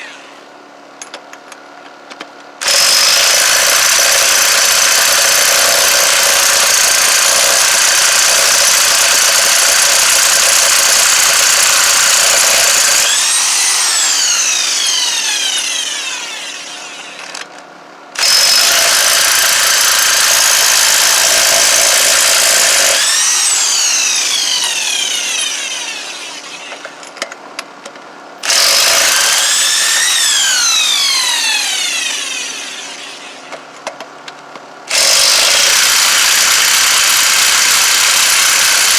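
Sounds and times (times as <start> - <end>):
electric impact wrench running: 0.0 - 0.4, 2.6 - 17.5, 18.2 - 27.0, 28.4 - 33.6, 34.9 - 38.9
motor winding down whine: 0.0 - 0.5, 10.8 - 17.5, 18.2 - 27.0, 28.4 - 33.6.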